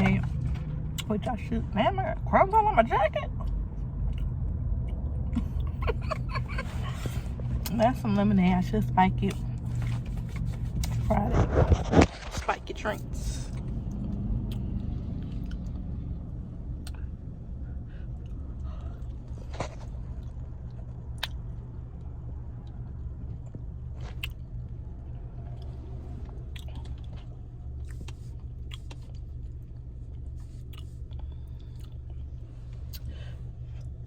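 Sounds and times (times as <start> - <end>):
steady low hum: 0.0 - 34.0
chewing crunchy food: 22.6 - 33.2.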